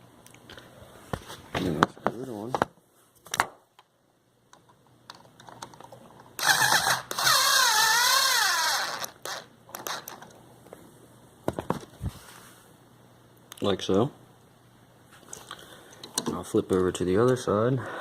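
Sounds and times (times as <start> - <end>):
electric screwdriver motor whine: 6.4 - 10.2.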